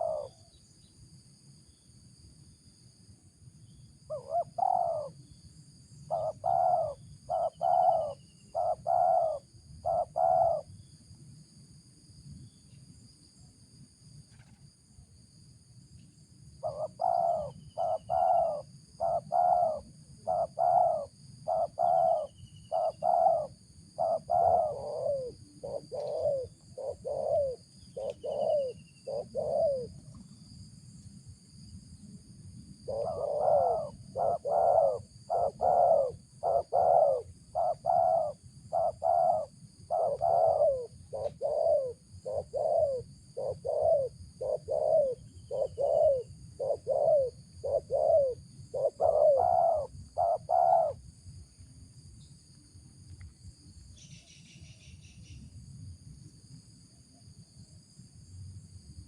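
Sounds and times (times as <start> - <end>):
dove cooing: 0.0 - 0.5, 4.1 - 5.2, 6.1 - 10.7, 16.6 - 30.1, 32.8 - 51.0.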